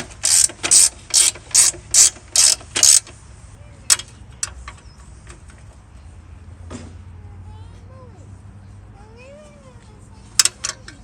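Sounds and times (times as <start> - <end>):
ratchet wrench clicking: 0.0 - 3.1.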